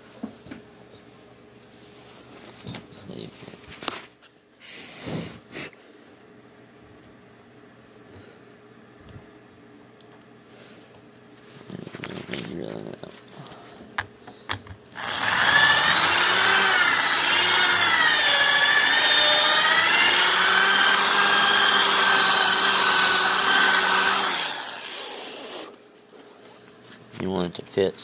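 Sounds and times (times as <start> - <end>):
electric drill boring into wood: 15.0 - 25.7.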